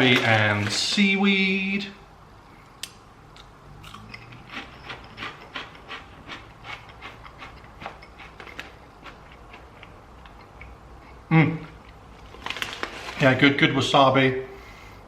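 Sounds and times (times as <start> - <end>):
crisps being chewed: 3.3 - 10.8, 11.8 - 13.2.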